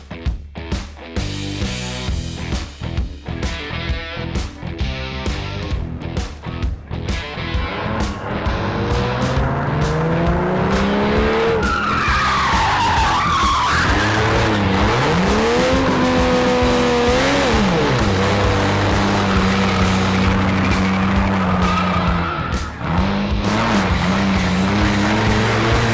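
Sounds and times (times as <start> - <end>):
car engine revving: 5.2 - 25.9
tyres squealing: 10.7 - 23.9.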